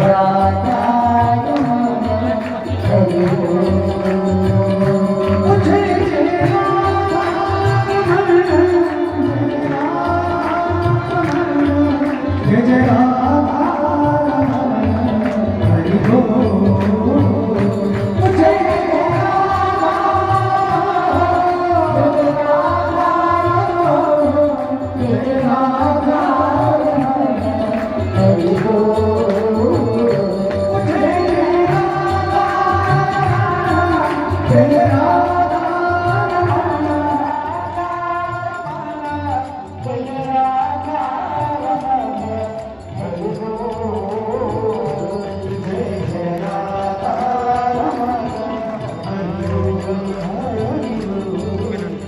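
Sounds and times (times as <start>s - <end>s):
voices singing a hymn: 0.0s - 39.5s
jingling percussion: 0.0s - 52.0s.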